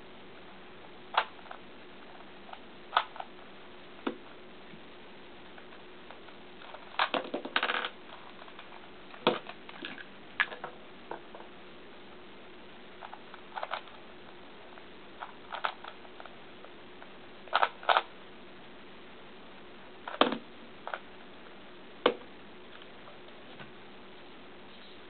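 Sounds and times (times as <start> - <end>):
faint steady hum: 0.0 - 25.0
puzzle cube plastic clacks: 15.2 - 16.3.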